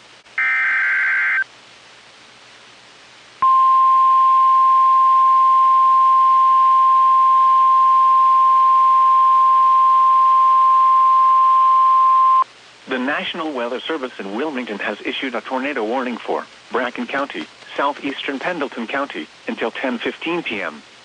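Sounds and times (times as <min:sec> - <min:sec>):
loud steady alarm tone: 0:00.4 - 0:01.4
warbling data screech: 0:00.4 - 0:01.4.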